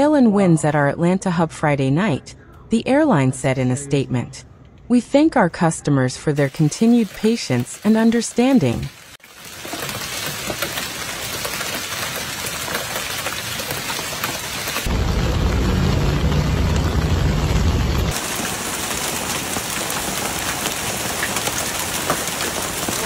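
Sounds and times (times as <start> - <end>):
heavy rain pouring: 6.4 - 23.0
deep rumble: 14.9 - 18.2.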